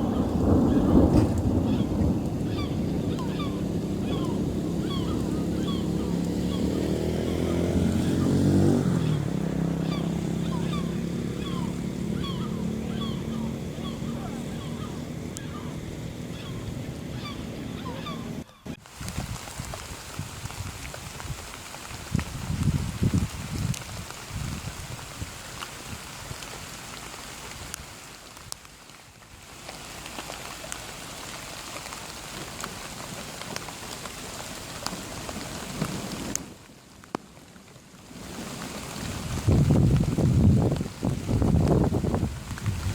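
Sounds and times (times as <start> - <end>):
rain hissing: 0.0 - 42.9
small birds chirping: 1.6 - 18.8
vehicle engine low hum: 2.8 - 18.5.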